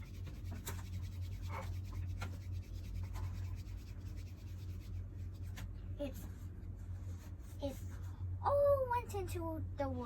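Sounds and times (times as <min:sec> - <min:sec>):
soft rubbing and scratching: 0:00.0 - 0:08.2
low steady hum: 0:00.0 - 0:10.0.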